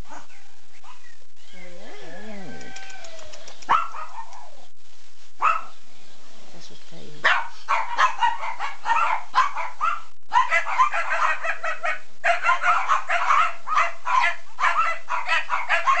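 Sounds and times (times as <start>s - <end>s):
dog barking rapidly: 3.7s - 4.3s, 5.4s - 5.8s, 7.2s - 16.0s.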